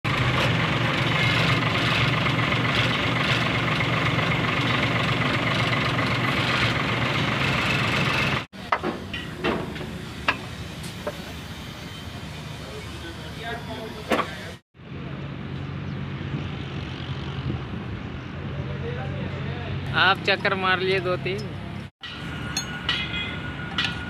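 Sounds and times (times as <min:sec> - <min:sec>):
truck engine running: 0:00.0 - 0:14.6
workshop background: 0:00.0 - 0:16.8, 0:17.4 - 0:24.0.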